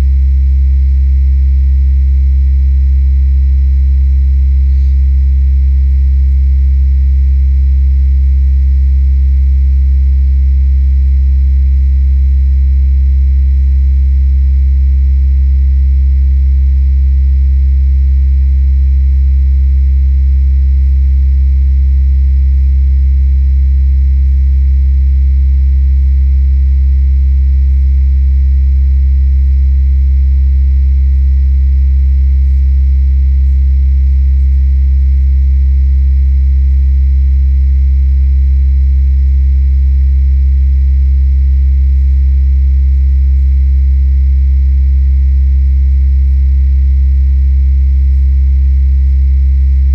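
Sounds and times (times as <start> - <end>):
deep electrical hum: 0.0 - 8.0.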